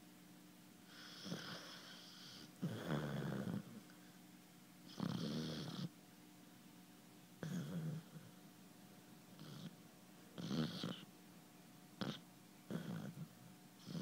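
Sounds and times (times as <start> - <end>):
dog snoring: 0.9 - 3.8, 4.9 - 6.0, 7.4 - 8.4, 9.3 - 9.8, 10.4 - 11.1, 12.0 - 14.0.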